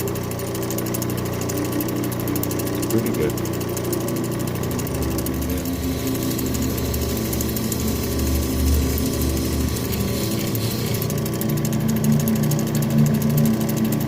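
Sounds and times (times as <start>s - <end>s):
motor hum: 0.0s - 14.0s
stone grinding on wheel: 4.1s - 11.3s.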